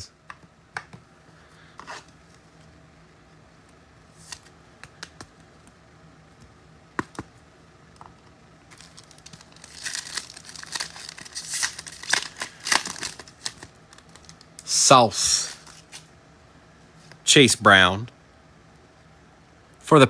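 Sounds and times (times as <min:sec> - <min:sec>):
foil wrapper tearing and crinkling: 0:08.7 - 0:14.6.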